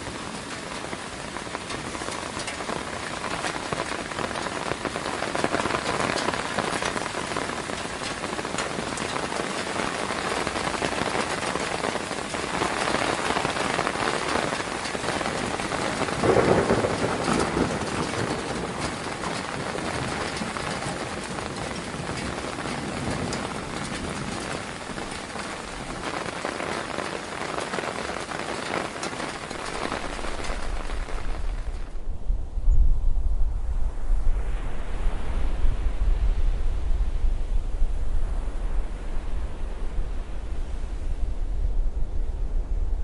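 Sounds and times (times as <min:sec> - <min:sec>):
steady rain falling: 0:00.0 - 0:32.3, 0:33.6 - 0:43.0.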